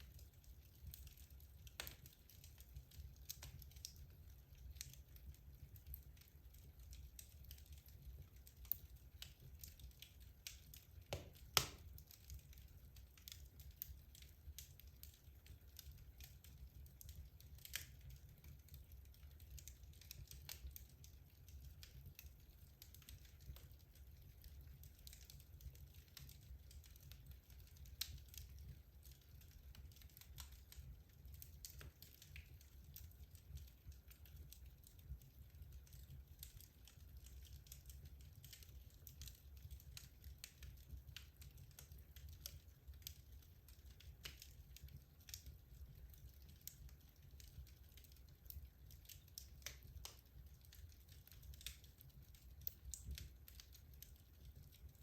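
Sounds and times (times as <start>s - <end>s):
fire crackling and popping: 0.0s - 55.0s.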